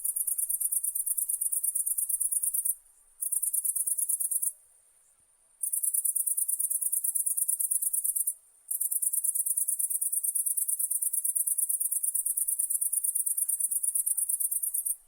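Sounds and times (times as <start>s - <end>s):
high-pitched insects chirping: 0.0s - 4.5s, 5.6s - 15.0s.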